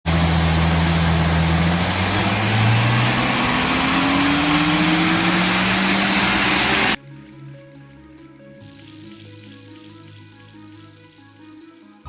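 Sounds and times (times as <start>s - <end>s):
car engine speeding up: 0.0s - 7.0s
loud rushing noise: 0.1s - 7.0s.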